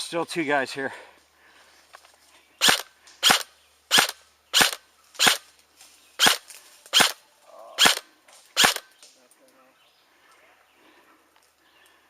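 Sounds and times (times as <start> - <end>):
airsoft gun shots: 2.6 - 5.5, 6.2 - 7.2, 7.8 - 8.0, 8.6 - 8.9.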